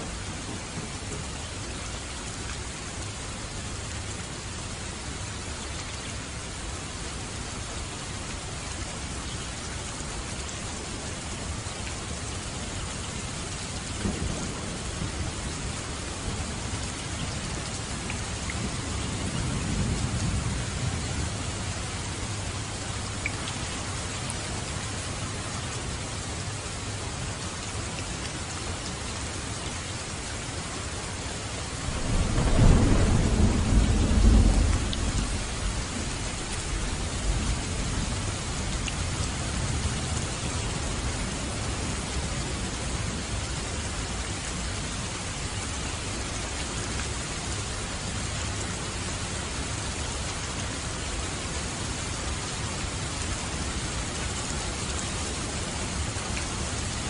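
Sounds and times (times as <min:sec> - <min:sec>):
heavy rain falling: 0:00.0 - 0:57.0
rumble of thunder: 0:13.9 - 0:23.1, 0:31.7 - 0:43.2.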